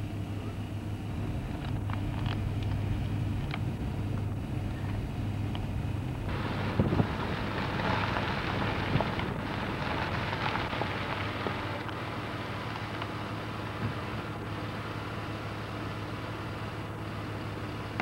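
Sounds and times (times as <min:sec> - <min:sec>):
vehicle running hum: 0:00.0 - 0:18.0
wind on microphone: 0:06.3 - 0:11.8.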